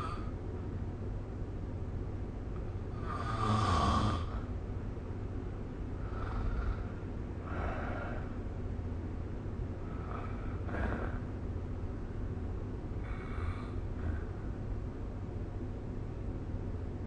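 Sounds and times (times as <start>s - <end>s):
steady low hum: 0.0s - 17.0s
person snoring: 3.0s - 4.4s.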